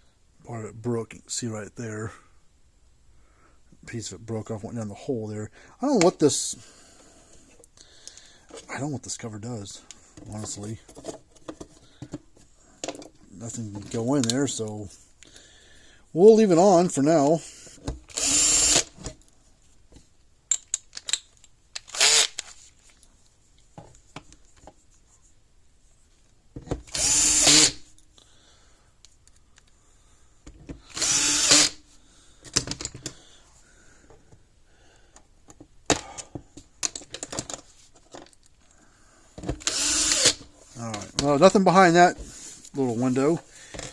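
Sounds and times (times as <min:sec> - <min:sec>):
power drill whirring: 0:18.1 - 0:19.0, 0:21.9 - 0:22.4, 0:26.9 - 0:27.8, 0:30.8 - 0:31.8, 0:39.6 - 0:40.5
plastic parts clicking: 0:20.5 - 0:22.5.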